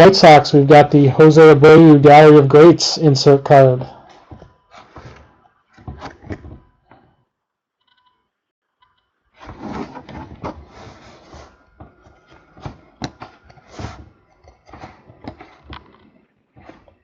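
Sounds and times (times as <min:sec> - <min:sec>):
cards rustling and sliding: 0:09.4 - 0:17.0.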